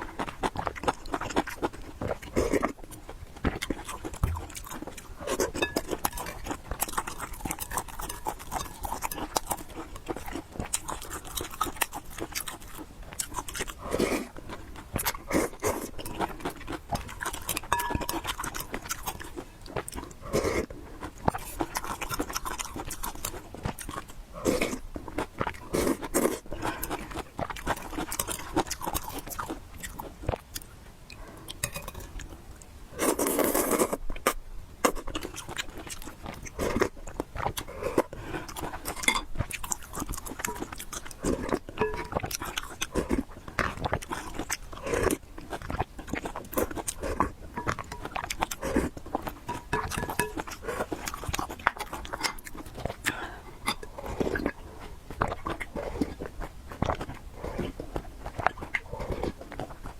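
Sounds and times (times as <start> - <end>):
chewing with wet mouth clicks: 0.0 - 59.9.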